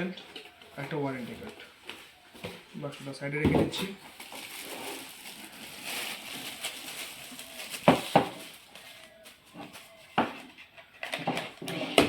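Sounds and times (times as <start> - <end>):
items knocking on hard surface: 3.4 - 3.9, 7.8 - 8.4
packaging rustling: 3.8 - 10.5.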